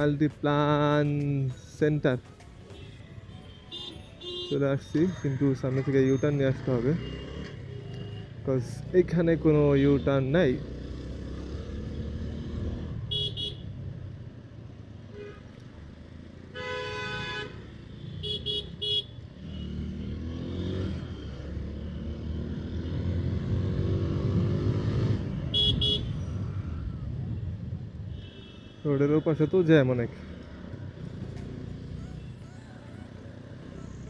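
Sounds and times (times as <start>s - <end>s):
vehicle horns honking: 2.7s - 4.8s, 13.0s - 13.7s, 16.5s - 19.9s, 25.5s - 26.3s, 28.1s - 29.5s
motorcycle and car engines rumbling: 4.8s - 34.0s.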